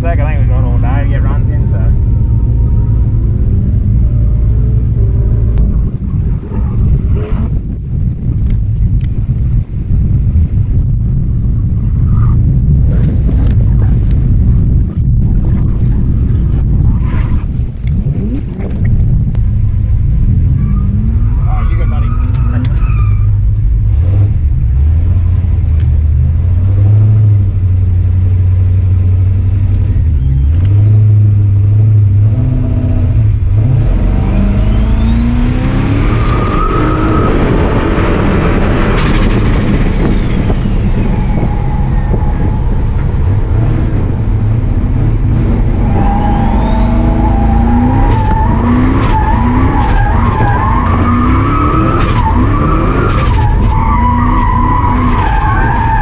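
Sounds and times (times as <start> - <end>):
car engine revving: 0.0 - 56.0
turbo whistle: 45.8 - 56.0.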